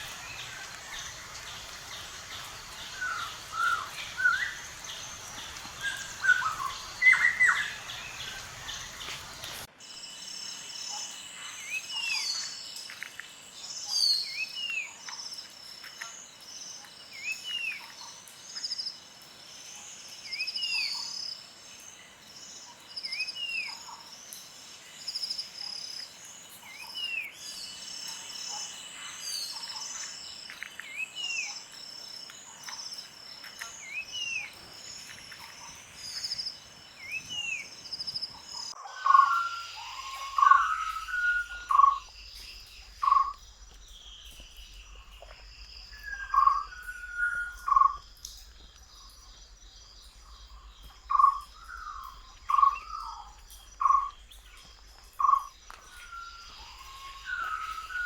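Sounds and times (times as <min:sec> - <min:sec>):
insects trilling and chirping: 0:00.0 - 0:58.0
birds calling: 0:32.6 - 0:58.0.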